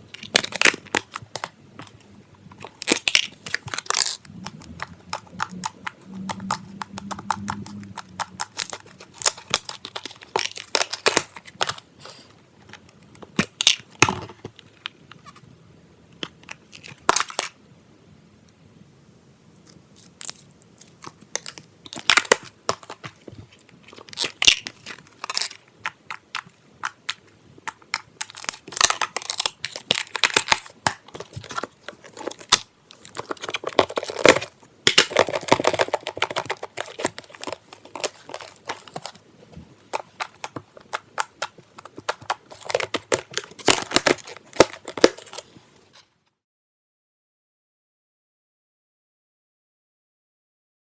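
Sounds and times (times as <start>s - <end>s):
slime squishing with wet pops: 20.1s - 45.6s.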